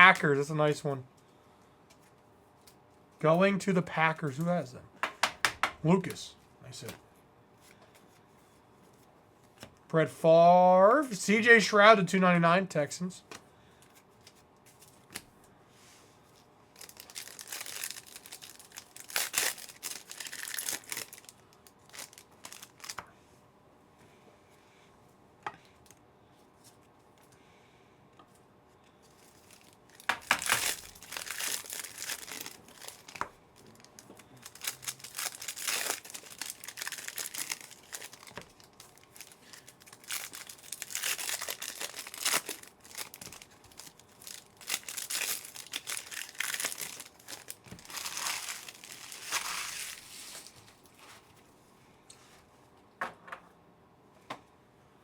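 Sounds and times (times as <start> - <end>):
card wrappers tearing and crinkling: 16.8 - 23.0, 29.2 - 50.8.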